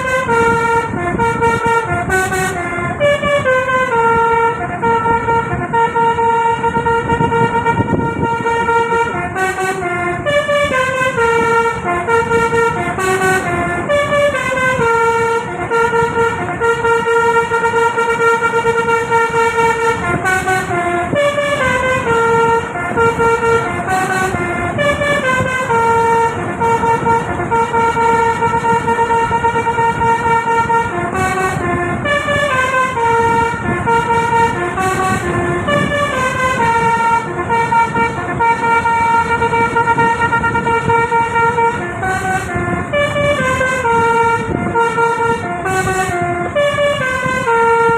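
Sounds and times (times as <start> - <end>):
musical bus air horn playing a tune: 0.0 - 47.9.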